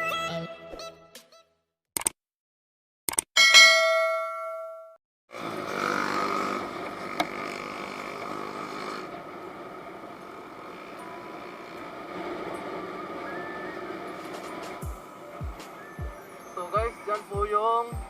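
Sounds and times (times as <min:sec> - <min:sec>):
sharp click: 0:02.0 - 0:02.2, 0:03.1 - 0:03.3
vehicle engine hum: 0:05.3 - 0:17.6
wind and road noise: 0:06.7 - 0:17.4
chime: 0:15.3 - 0:18.0.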